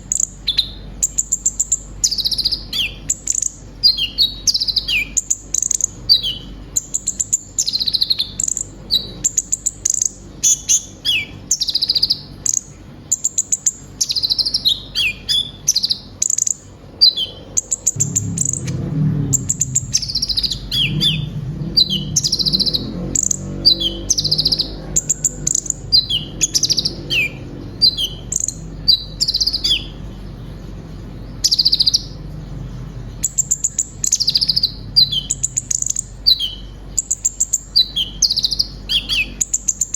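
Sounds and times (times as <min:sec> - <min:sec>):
low background rumble: 0:00.0 - 0:39.9
sunbird singing high chirps: 0:00.0 - 0:39.9.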